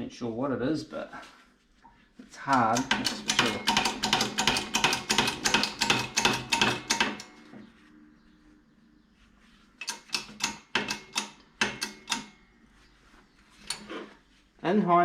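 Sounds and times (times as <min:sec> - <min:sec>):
hacksaw cutting steel bar: 0:02.5 - 0:07.3, 0:09.8 - 0:12.4.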